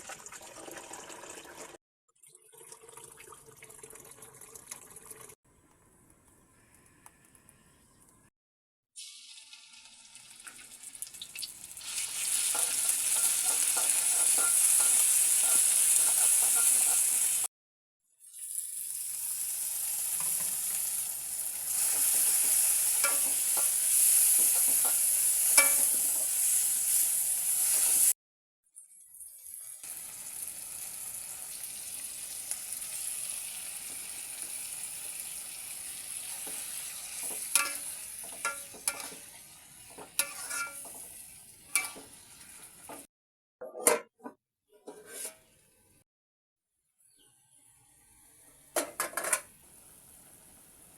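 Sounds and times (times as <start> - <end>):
squid sizzling in a pan: 9.0 - 17.5, 18.2 - 28.2, 29.2 - 43.1
utensil scraping a pan: 12.4 - 17.2, 37.2 - 39.3, 39.9 - 41.1, 41.7 - 42.1, 44.8 - 45.5.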